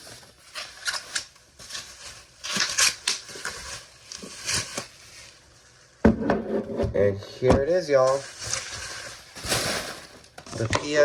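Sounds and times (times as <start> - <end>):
packaging rustling and crinkling: 0.0 - 5.8, 7.8 - 11.0.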